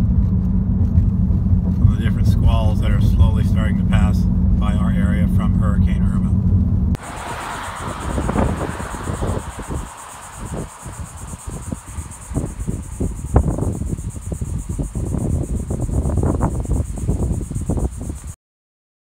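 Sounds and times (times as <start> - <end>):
high-pitched pulsing trill: 7.0 - 17.8
wind buffeting microphone: 7.0 - 18.4.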